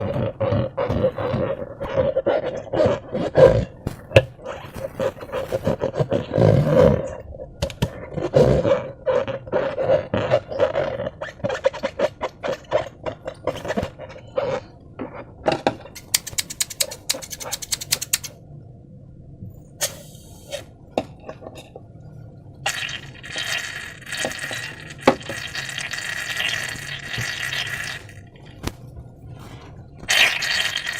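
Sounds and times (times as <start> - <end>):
slime squelching: 0.0 - 7.2, 22.7 - 30.9.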